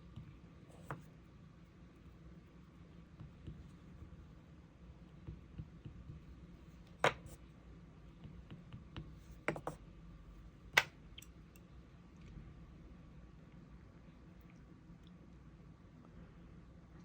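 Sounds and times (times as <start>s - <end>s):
hand tools tapping on tabletop: 8.5s - 9.8s.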